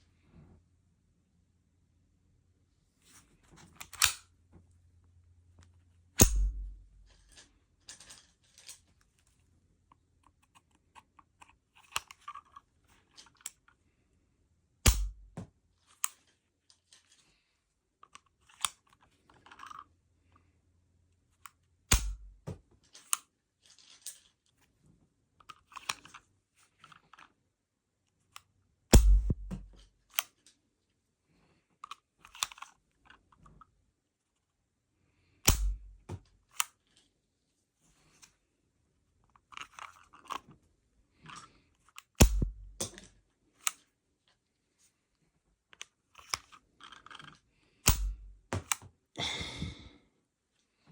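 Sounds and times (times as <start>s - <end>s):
light clicks and rattles: 5.6s - 13.8s
pistol shots: 6.2s - 6.7s, 14.9s - 15.2s.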